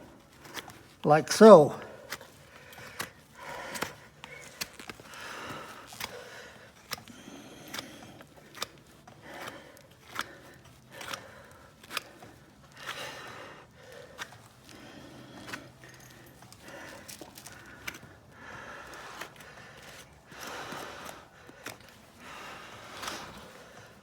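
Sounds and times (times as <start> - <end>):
knife cutting hoof horn: 2.0 - 13.2.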